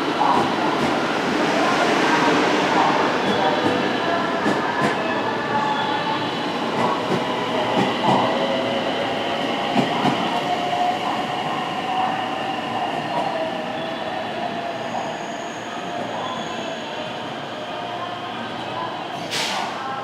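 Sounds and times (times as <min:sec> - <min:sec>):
train whine: 0:00.0 - 0:15.4.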